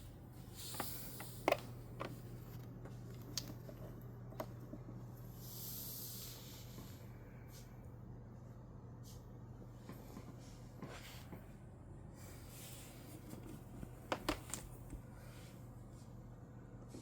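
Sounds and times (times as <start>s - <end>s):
projector cooling fan hum: 0.0s - 17.0s.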